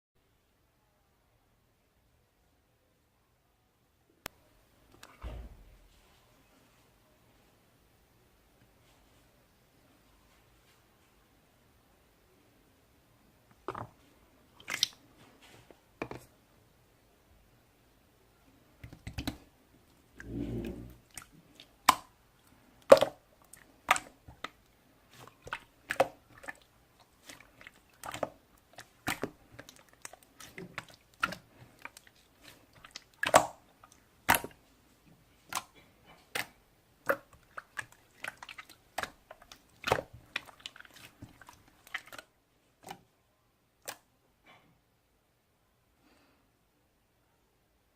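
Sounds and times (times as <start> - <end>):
slime squelch: 13.5 - 16.3, 18.8 - 43.1.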